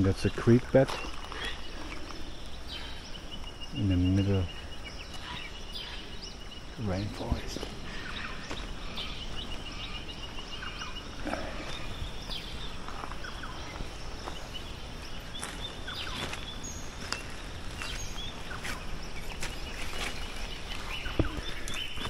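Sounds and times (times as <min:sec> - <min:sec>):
background hiss: 0:00.0 - 0:22.0
birds chirping and whistling: 0:00.0 - 0:22.0
footsteps on track: 0:08.4 - 0:09.4, 0:15.3 - 0:22.0.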